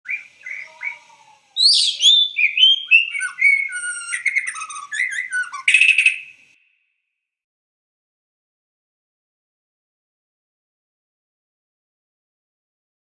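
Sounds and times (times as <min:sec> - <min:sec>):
bird chirping and whistling: 0:00.1 - 0:06.4.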